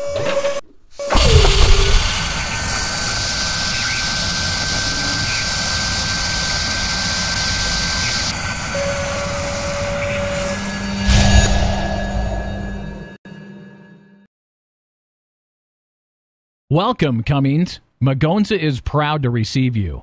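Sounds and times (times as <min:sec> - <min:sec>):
loud mechanical rushing with whine: 0:01.0 - 0:13.2
loud burst sweeping down: 0:01.1 - 0:13.1.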